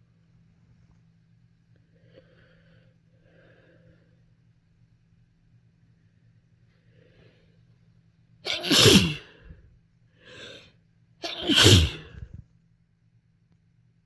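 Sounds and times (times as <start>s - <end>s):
breath intake: 8.5s - 9.6s, 10.2s - 12.4s
person sneezing: 8.5s - 9.6s, 10.3s - 10.6s, 11.2s - 12.4s.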